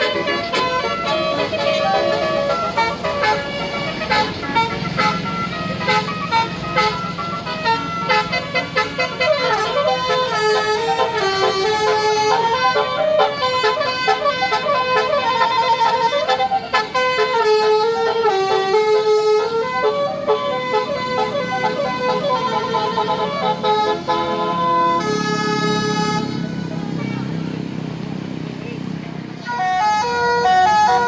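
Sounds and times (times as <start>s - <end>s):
musical horn playing melody: 0.0s - 27.0s, 29.4s - 31.0s.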